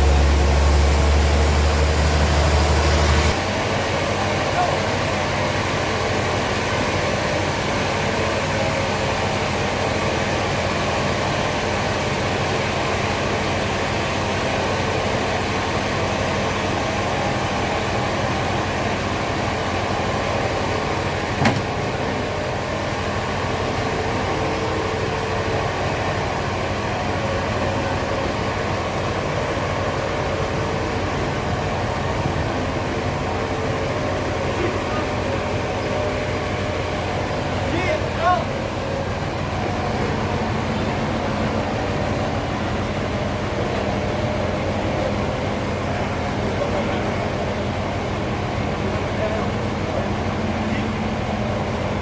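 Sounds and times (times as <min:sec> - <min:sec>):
sawmill machinery running: 0:00.0 - 0:52.0
sharp knock: 0:21.4 - 0:21.7.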